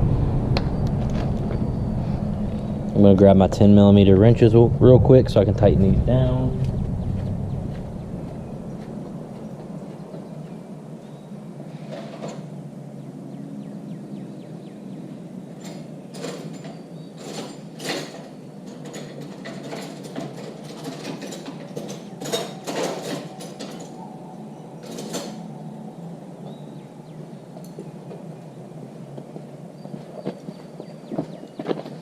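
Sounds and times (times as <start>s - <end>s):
steady background noise: 0.0s - 32.0s.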